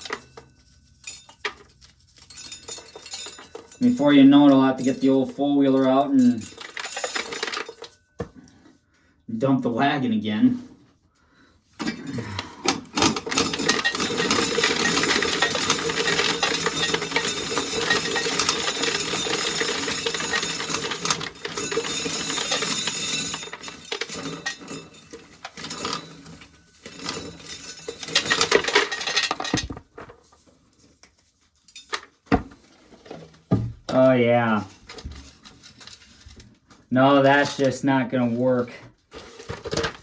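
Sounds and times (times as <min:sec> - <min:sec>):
corn sheller metallic clatter: 0:00.0 - 0:08.0, 0:11.8 - 0:30.5, 0:37.2 - 0:40.0
kernels rattling: 0:00.0 - 0:08.0, 0:11.8 - 0:30.4, 0:39.1 - 0:40.0.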